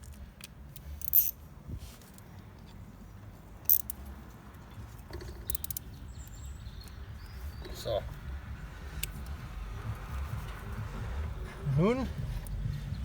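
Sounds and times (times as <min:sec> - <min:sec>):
metal tools clinking: 0:00.8 - 0:01.4, 0:03.7 - 0:04.0.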